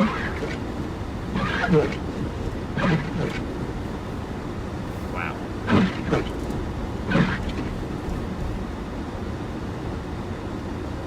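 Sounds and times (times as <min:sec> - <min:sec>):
windshield wipers swishing: 0:00.0 - 0:04.3, 0:04.9 - 0:08.8
car driving through deep snow: 0:00.0 - 0:11.0.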